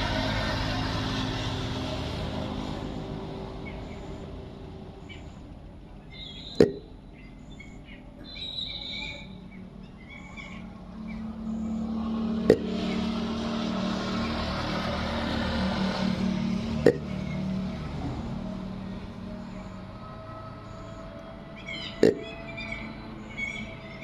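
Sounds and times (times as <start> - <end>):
engine hum: 0.0 - 24.0
bird chirps: 3.5 - 4.4, 5.0 - 11.9, 20.6 - 24.0.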